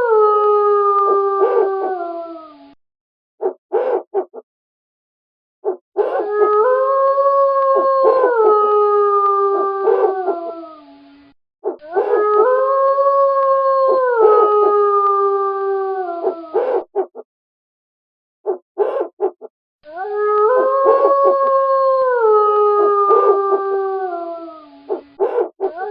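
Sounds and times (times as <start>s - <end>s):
wolf howling: 0.0s - 2.8s, 5.6s - 17.0s, 19.9s - 25.9s
wolf short calls: 18.5s - 19.4s.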